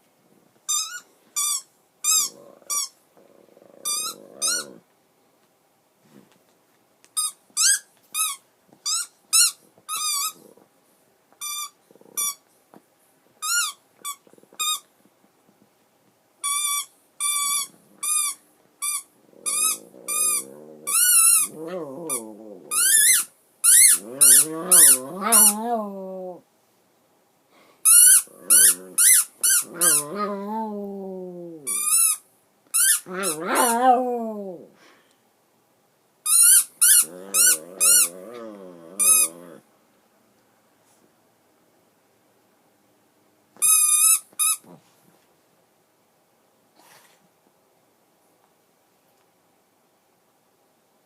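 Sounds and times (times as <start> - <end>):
squeaky toy squeaking: 0.7 - 2.9, 7.2 - 10.4, 11.4 - 12.4, 13.4 - 14.8, 16.4 - 20.3, 22.1 - 25.6, 27.9 - 30.0, 31.7 - 32.2, 32.8 - 33.6, 36.3 - 38.1, 43.6 - 44.6
dog howling: 24.1 - 26.4, 33.1 - 34.7.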